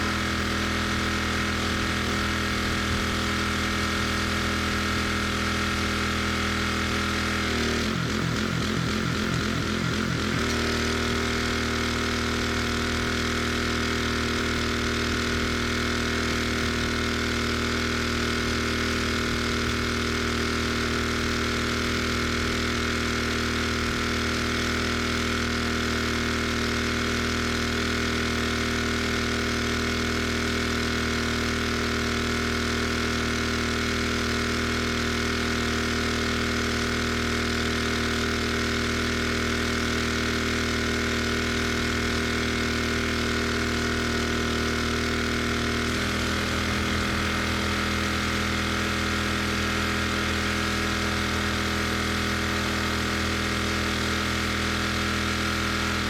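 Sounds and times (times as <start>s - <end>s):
pressure washer engine running: 0.0s - 56.0s.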